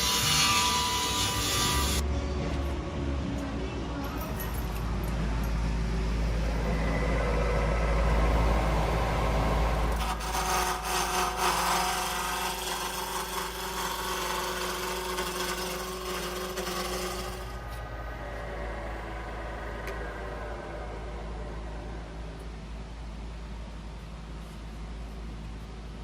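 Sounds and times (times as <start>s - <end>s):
tool cutting and scraping wood: 0.0s - 2.0s, 10.0s - 17.8s
steady low hum: 0.0s - 26.0s.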